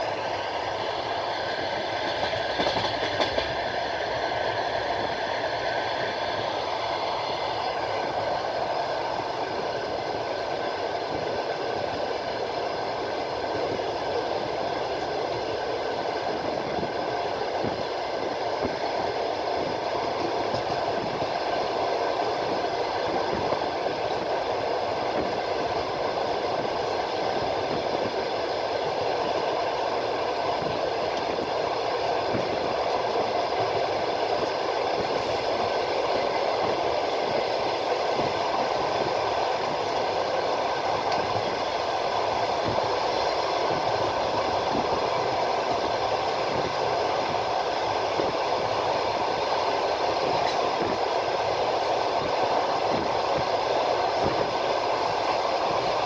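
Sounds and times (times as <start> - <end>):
train wheels on rail: 0.0 - 56.0.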